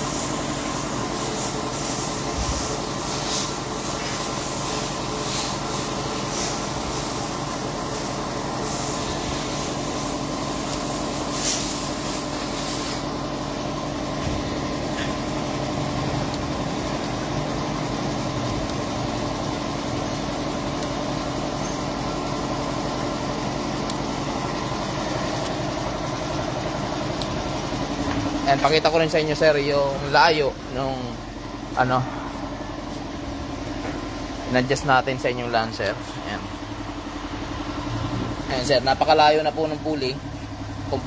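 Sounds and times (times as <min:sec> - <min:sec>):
car engine idling: 0:00.0 - 0:41.0
high hiss: 0:10.9 - 0:13.2.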